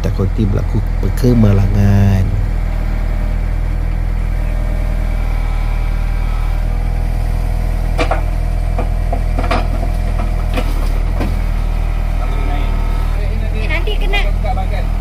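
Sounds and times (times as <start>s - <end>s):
diesel engine idling: 0.0s - 15.0s
sharp metallic knocks: 7.9s - 11.4s.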